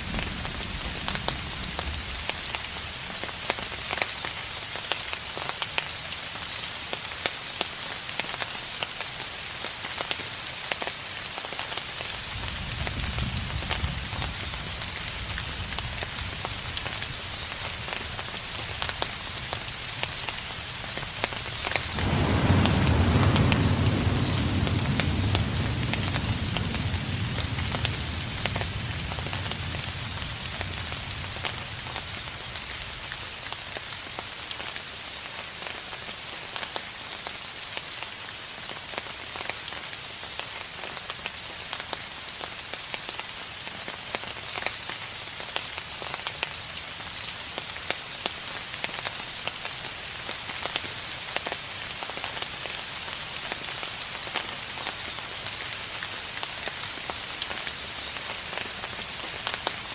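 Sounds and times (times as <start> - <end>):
distant thunder rumble: 0.0 - 2.8, 12.4 - 32.9
steady rain patter: 0.0 - 59.9.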